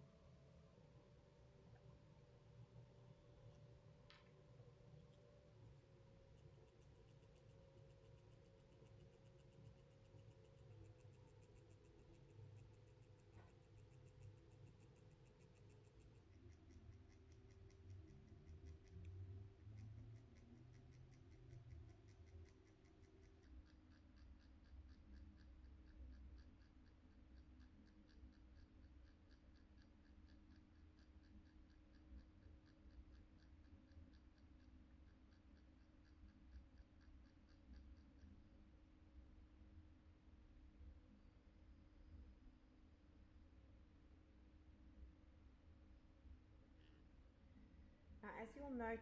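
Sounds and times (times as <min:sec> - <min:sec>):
tattoo machine humming and ticking: 0:06.4 - 0:38.2.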